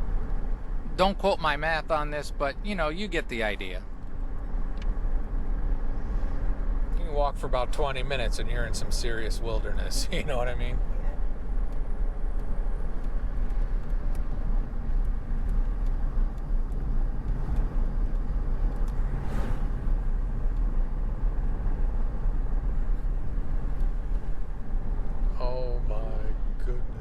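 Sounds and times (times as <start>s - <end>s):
car driving rumble: 0.0s - 27.0s
brief whoosh: 18.8s - 22.1s.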